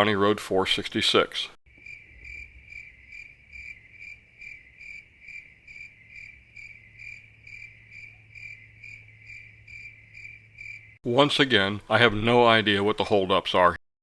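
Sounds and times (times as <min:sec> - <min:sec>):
cricket chirping: 0:01.7 - 0:11.0.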